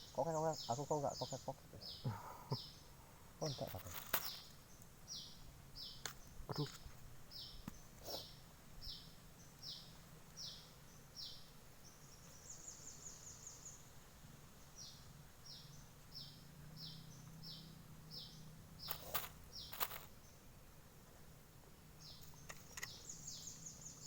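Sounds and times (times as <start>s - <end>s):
bird calling: 0.0s - 4.5s, 18.8s - 20.1s
sharp clicks: 22.2s - 23.0s.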